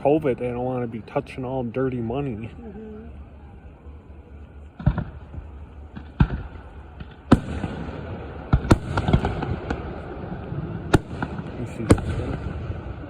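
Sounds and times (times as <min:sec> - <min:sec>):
faint hissing crackle: 0:00.0 - 0:13.0
firework shells booming: 0:04.8 - 0:13.0.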